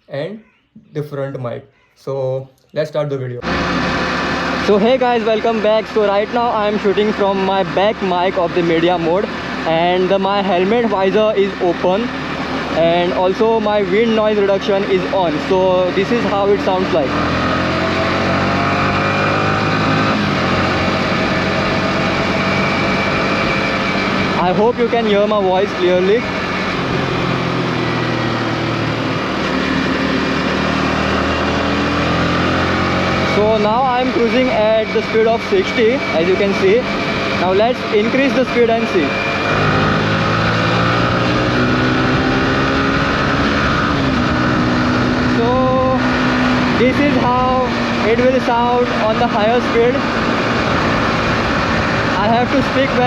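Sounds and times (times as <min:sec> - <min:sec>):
road noise: 0:00.0 - 0:53.0
motorcycle engine running: 0:03.5 - 0:53.0.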